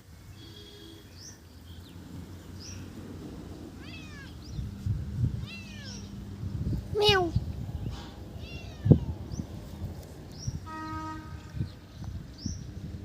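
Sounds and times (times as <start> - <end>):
cat meowing: 3.8 - 4.4, 5.4 - 6.1, 8.4 - 9.2.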